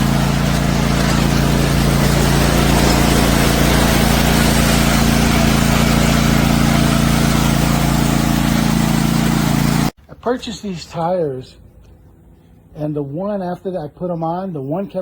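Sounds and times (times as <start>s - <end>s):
riding lawn mower engine: 0.0s - 10.0s.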